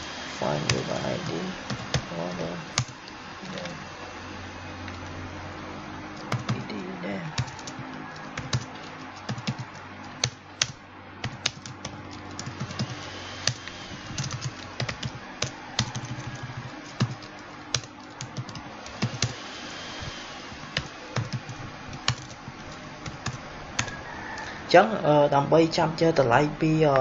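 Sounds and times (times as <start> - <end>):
typing on computer keyboard: 1.2 - 2.1, 2.8 - 3.7, 6.2 - 6.7, 7.3 - 19.4, 20.8 - 24.5.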